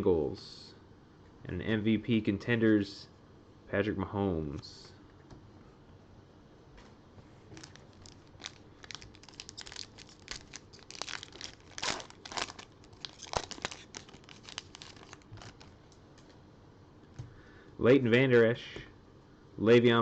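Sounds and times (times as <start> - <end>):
wrapper tearing and crinkling: 7.5 - 16.0.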